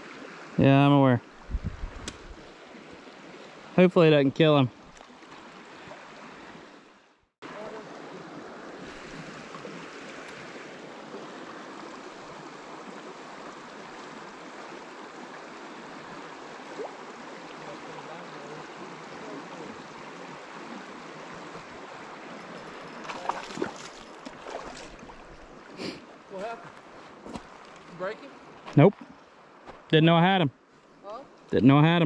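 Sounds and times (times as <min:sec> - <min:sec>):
creek water flowing: 0:00.0 - 0:32.0.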